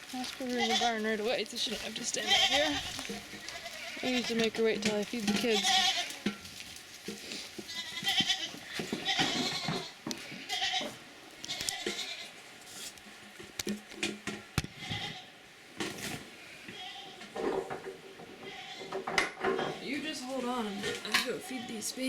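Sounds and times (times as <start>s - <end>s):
goats bleating: 0.1s - 12.4s, 14.6s - 15.4s, 16.6s - 17.4s, 18.3s - 19.2s, 20.2s - 22.0s.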